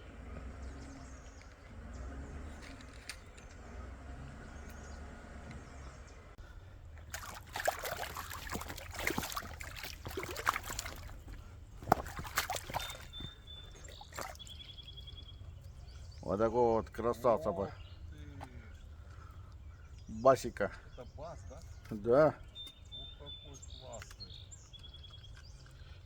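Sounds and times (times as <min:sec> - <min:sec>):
water sloshing and lapping: 0:06.4 - 0:17.4, 0:22.9 - 0:26.0
heavy irregular splashing: 0:06.9 - 0:15.1.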